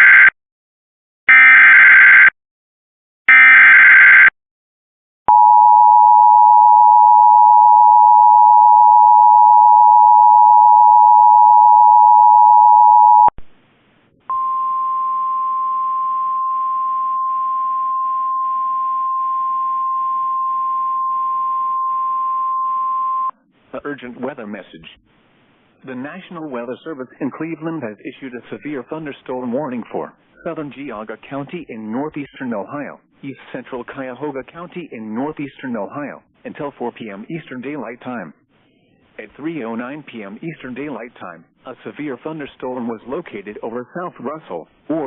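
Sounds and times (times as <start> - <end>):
single steady tone: 5.3 - 13.4, 14.3 - 23.4.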